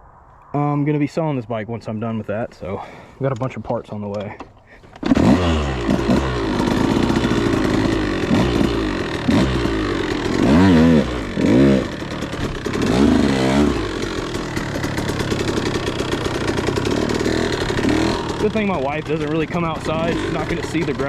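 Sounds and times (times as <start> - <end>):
dirt bike engine revving: 5.0 - 21.0.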